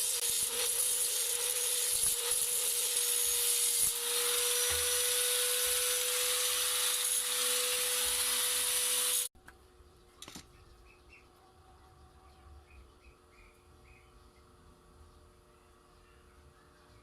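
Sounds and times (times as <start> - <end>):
faint bird chirps: 10.0 - 17.0.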